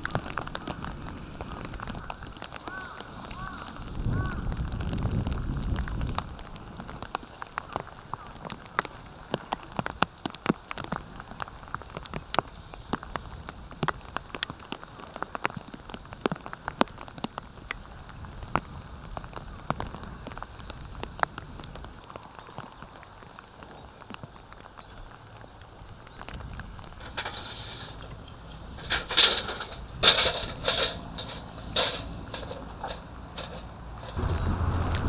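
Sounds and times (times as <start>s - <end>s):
faint rain hiss: 10.1s - 35.0s
raindrops tapping: 26.2s - 35.0s.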